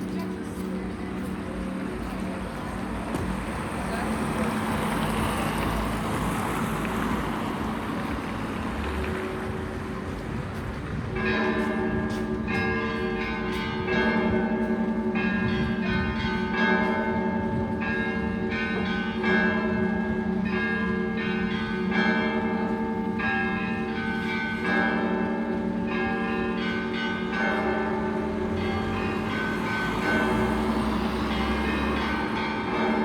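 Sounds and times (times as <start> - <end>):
church bells ringing: 10.9 - 33.0.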